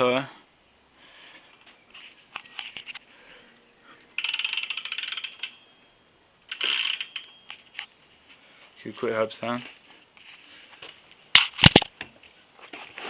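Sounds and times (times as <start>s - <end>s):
bicycle hub freewheel clicking: 4.2s - 5.6s, 6.5s - 7.3s.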